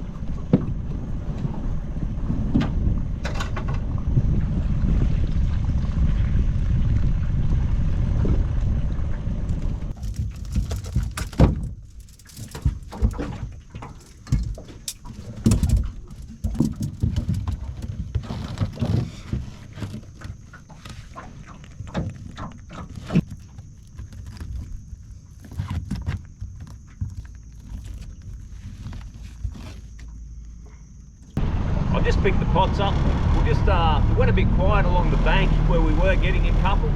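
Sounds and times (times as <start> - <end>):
boat motor running: 0.0 - 11.1, 31.4 - 36.9
knocks and clunks: 2.4 - 4.4, 9.6 - 31.4.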